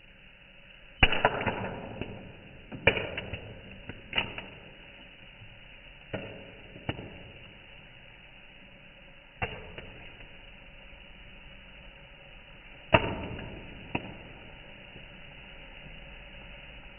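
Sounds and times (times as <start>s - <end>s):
popcorn kernels popping: 1.0s - 4.8s, 6.1s - 7.6s, 9.4s - 10.4s, 12.9s - 14.6s.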